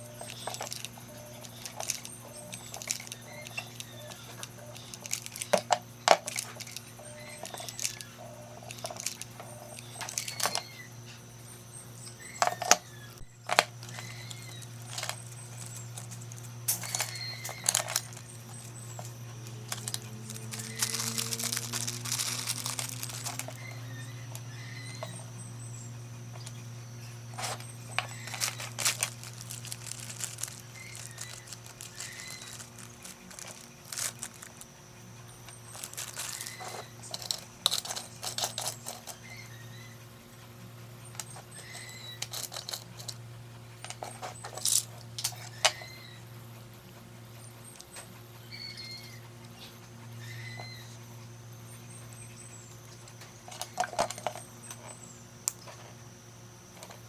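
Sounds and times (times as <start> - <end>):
rustling and scraping: 0.0 - 10.7, 13.5 - 23.8, 27.2 - 34.7, 35.4 - 39.2, 41.3 - 43.2.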